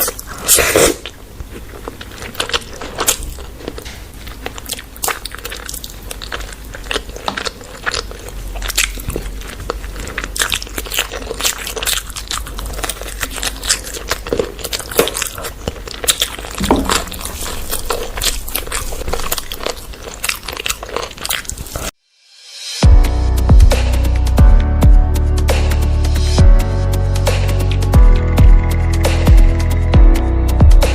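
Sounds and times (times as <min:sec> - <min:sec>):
wet chewing and crunching: 0:00.0 - 0:22.0.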